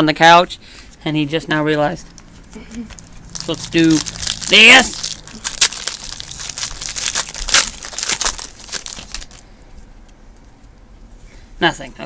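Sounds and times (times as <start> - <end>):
wrapper tearing and crinkling: 2.7 - 9.4.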